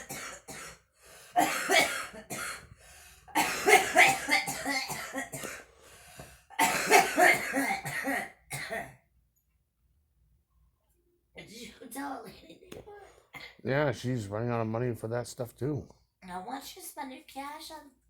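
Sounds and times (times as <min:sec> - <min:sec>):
person coughing: 0:00.0 - 0:00.8, 0:01.4 - 0:02.7, 0:03.3 - 0:05.7, 0:06.5 - 0:09.0.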